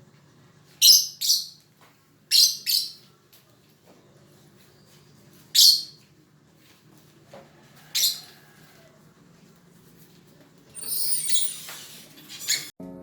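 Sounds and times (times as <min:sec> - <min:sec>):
lovebird shrill chirps: 0:10.8 - 0:12.7.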